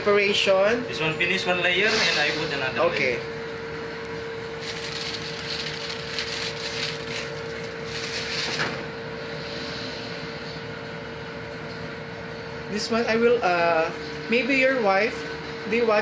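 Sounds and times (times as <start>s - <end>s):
kitchen machinery humming: 0.0s - 16.0s
scraping and handling noises: 4.5s - 8.8s.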